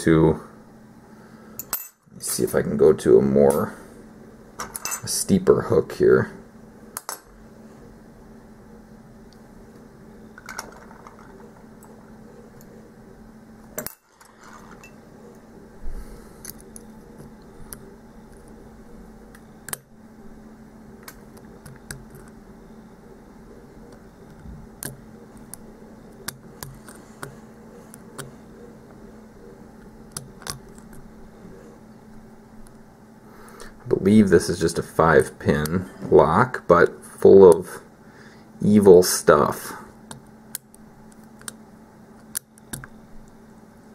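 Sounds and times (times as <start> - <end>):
steady low hum: 0.0 - 43.9.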